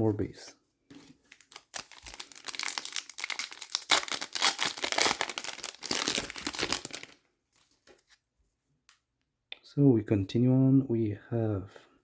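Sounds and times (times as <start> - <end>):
foil wrapper crinkling and tearing: 1.3 - 7.2.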